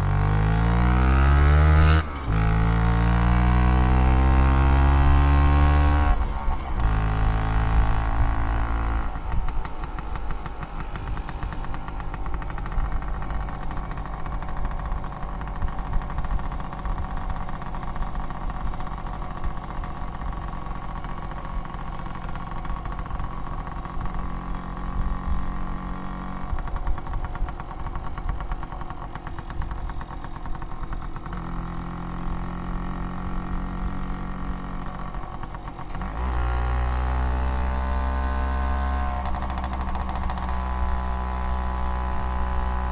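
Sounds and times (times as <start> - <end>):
scooter engine putter: 9.0 - 23.6.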